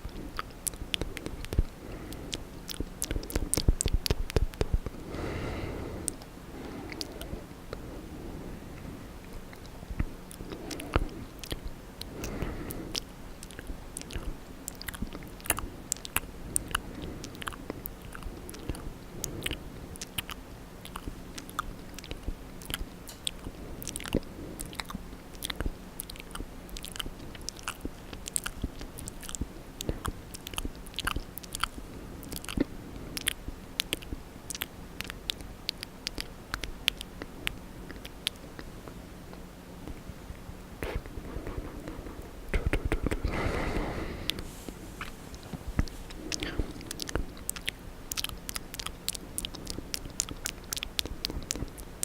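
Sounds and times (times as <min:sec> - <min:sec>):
wet lip and tongue clicks: 0:00.0 - 0:05.1, 0:06.0 - 0:07.9, 0:08.8 - 0:52.0.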